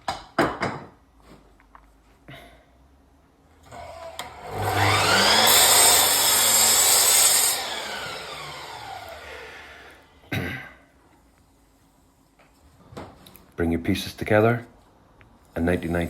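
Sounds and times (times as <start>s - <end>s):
mitre saw whine: 3.7s - 10.1s
saw blade cutting moulding: 4.2s - 10.0s.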